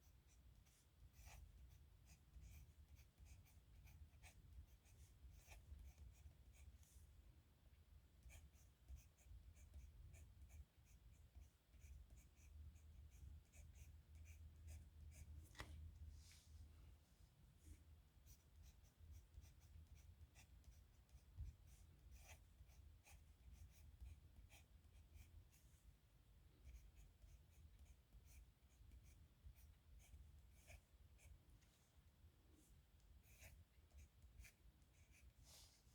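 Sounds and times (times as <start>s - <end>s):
pen scratching on paper: 0.0s - 7.0s, 8.2s - 15.3s, 17.7s - 25.4s, 26.6s - 31.3s, 33.2s - 35.3s.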